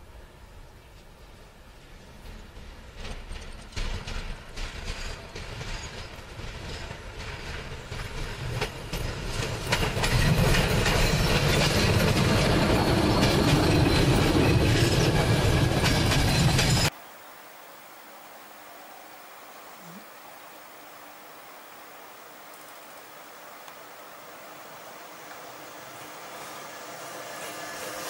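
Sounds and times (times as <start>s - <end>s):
train wheels clattering on track: 1.8s - 16.9s, 25.3s - 28.0s.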